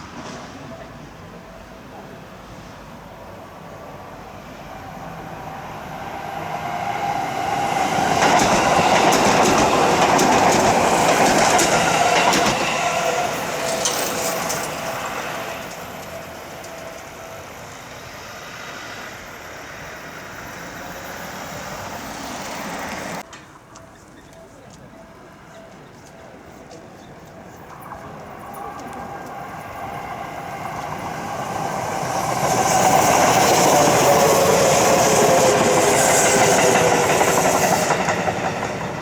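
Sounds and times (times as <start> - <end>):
electric train passing: 0.0 - 39.0
train wheels clicking over rail joints: 6.4 - 23.9, 25.7 - 39.0.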